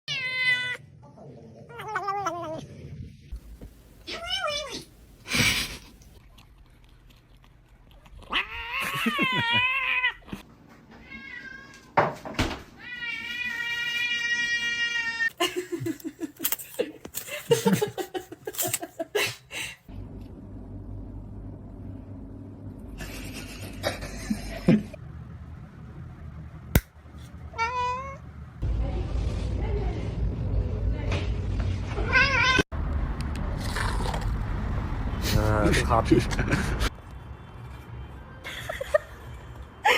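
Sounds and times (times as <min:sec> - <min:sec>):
cats meowing and yowling: 0:00.1 - 0:00.8, 0:01.7 - 0:02.6, 0:08.3 - 0:12.0, 0:12.8 - 0:15.4, 0:27.6 - 0:28.2.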